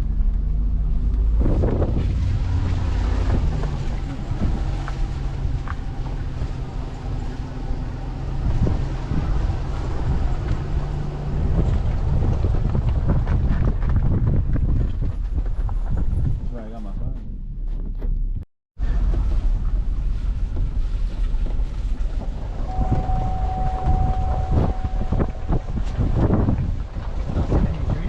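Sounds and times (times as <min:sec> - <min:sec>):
vehicle engine running: 0:00.0 - 0:13.9
wind buffeting microphone: 0:00.7 - 0:17.3, 0:19.1 - 0:28.0.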